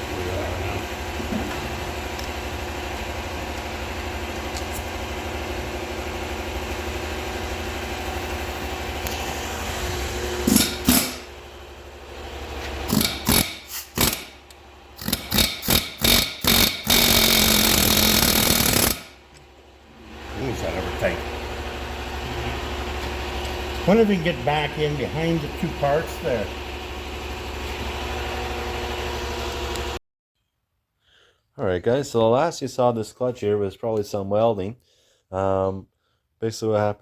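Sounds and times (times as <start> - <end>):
die grinder cutting steel: 9.0 - 11.4, 12.8 - 19.2.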